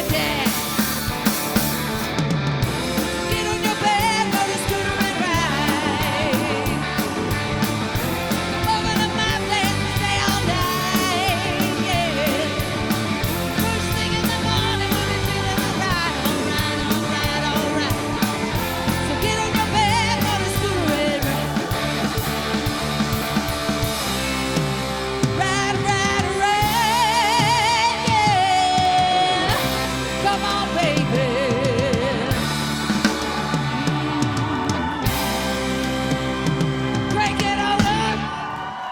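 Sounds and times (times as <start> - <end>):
person singing: 0.0 - 1.0, 2.8 - 22.3, 25.3 - 38.9
rock band playing live: 0.0 - 38.9.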